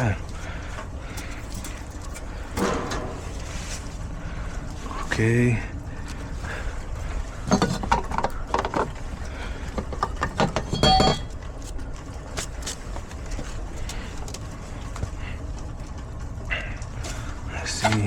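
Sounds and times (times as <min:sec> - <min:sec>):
steady low rumble: 0:00.0 - 0:10.3
hand tools clanking: 0:01.2 - 0:04.0, 0:07.4 - 0:09.0.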